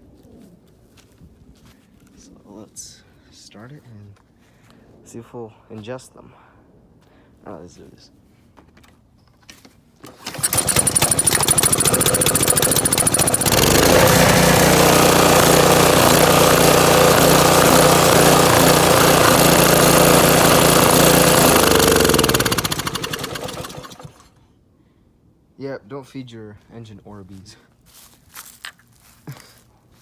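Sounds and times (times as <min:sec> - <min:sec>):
small engine running: 0:10.1 - 0:24.4.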